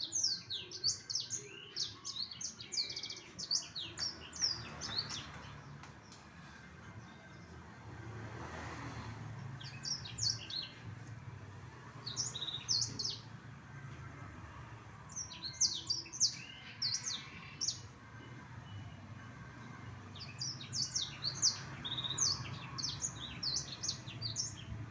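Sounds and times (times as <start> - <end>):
canary singing: 0.0 - 5.7, 9.5 - 10.9, 12.0 - 13.3, 15.1 - 18.0, 20.1 - 24.8.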